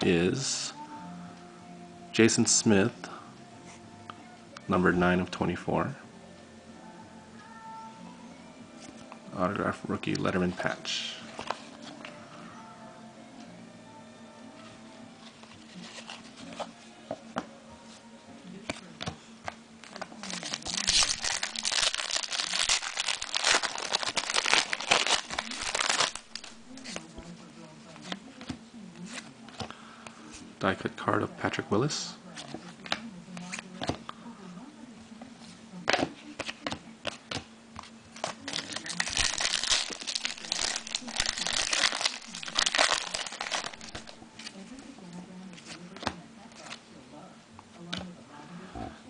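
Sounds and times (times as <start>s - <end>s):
foil wrapper crinkling and tearing: 19.8s - 27.0s, 38.2s - 44.6s.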